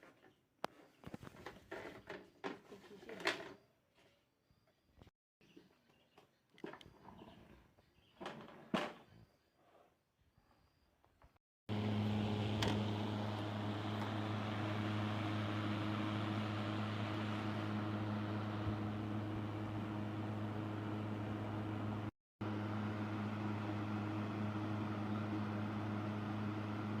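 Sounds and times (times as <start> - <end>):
electric fan running: 11.7 - 27.0.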